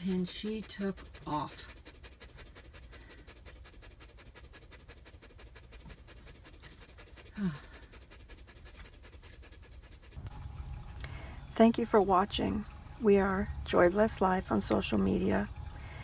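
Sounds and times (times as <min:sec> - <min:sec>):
dog panting fast: 0:00.0 - 0:10.6.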